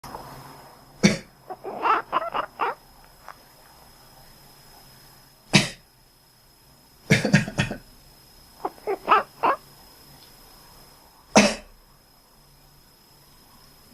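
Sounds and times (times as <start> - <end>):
cat making quack-like calls: 1.5 - 2.8, 8.6 - 9.6
person coughing: 7.1 - 7.8, 11.4 - 11.7.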